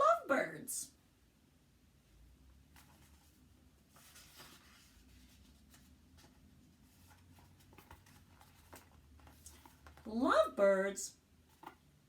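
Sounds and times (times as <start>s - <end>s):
faint rustle: 2.7s - 10.1s.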